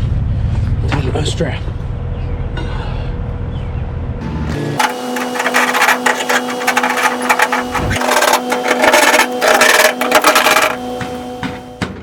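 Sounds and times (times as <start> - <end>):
steady hum: 4.2 - 12.0.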